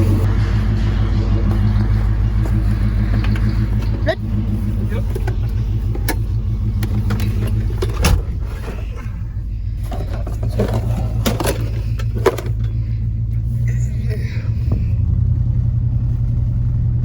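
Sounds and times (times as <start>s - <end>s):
truck engine and road drone: 0.0s - 17.0s
cab rattles and knocks: 1.0s - 13.6s.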